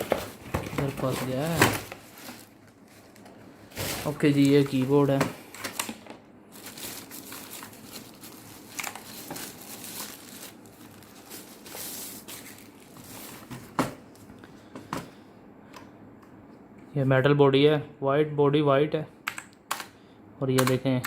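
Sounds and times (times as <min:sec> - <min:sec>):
packaging crinkling and rustling: 0:00.0 - 0:14.3.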